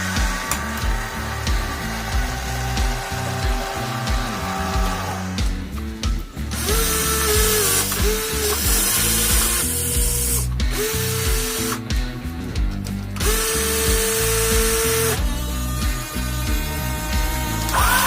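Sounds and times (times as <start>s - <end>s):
background music: 0.0s - 18.0s
small electric motors whining: 6.6s - 11.9s, 13.2s - 18.0s.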